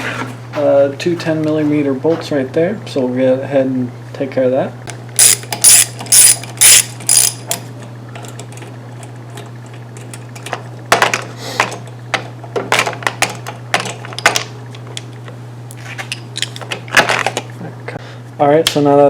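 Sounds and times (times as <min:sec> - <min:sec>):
ratchet wrench clicking: 0:05.2 - 0:07.6
metal parts clinking: 0:05.2 - 0:08.4, 0:16.0 - 0:17.4.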